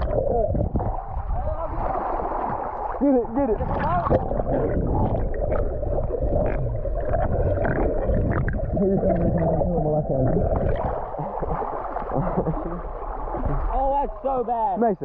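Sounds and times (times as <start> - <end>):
muffled rushing river water: 0.0 - 15.0.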